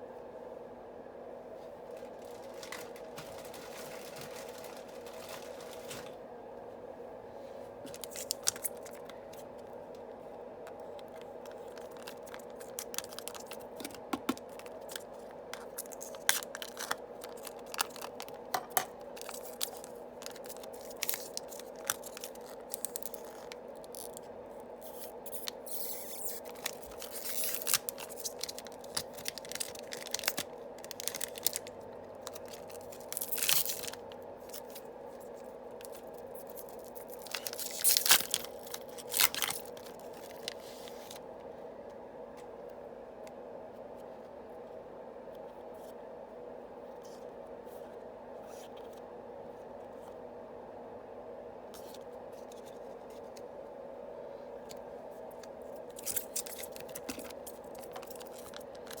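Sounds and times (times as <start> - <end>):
faint steady hum: 0.0 - 59.0
foil wrappers crinkling and tearing: 1.9 - 6.2, 7.9 - 9.6, 10.7 - 41.2, 55.7 - 59.0.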